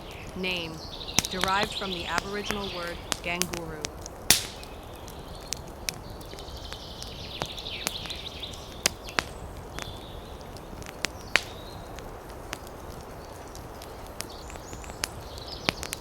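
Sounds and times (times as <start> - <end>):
high trilling call: 0.0 - 4.7
steady background hiss: 0.0 - 16.0.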